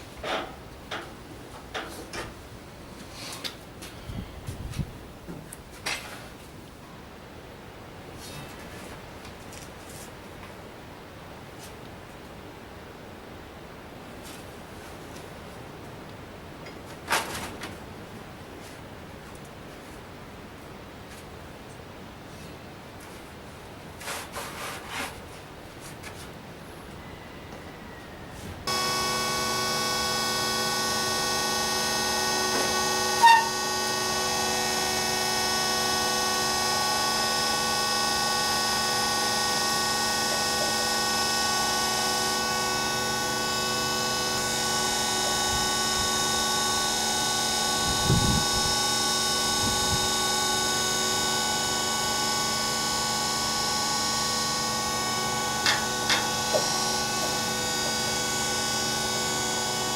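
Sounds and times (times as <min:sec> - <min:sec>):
saw machine whine: 0:26.9 - 0:59.9.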